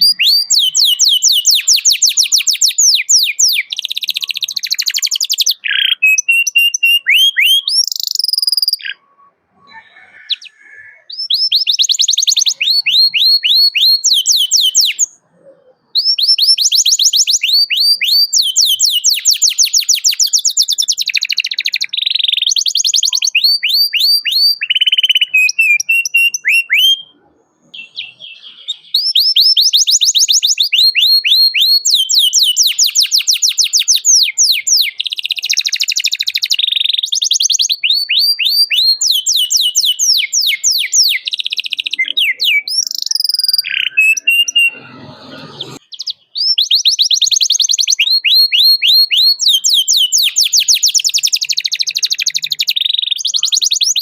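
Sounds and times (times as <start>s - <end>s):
canary singing trills: 0.0s - 54.0s.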